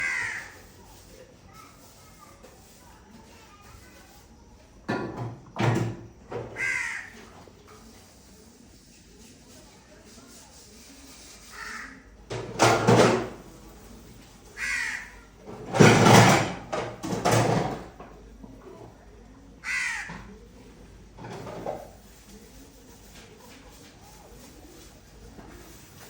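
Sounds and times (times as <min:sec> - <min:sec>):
crow cawing: 0:00.0 - 0:00.6, 0:06.5 - 0:07.3, 0:11.5 - 0:12.0, 0:14.6 - 0:15.3, 0:19.6 - 0:20.3.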